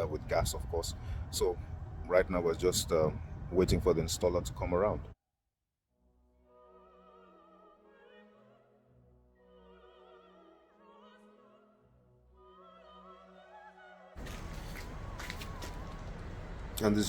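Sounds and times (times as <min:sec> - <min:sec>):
operatic singing with vibrato: 0:09.4 - 0:14.1.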